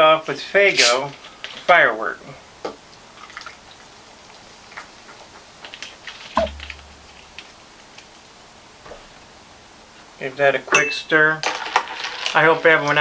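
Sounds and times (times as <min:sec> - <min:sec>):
glass knock: 0:06.4 - 0:07.2.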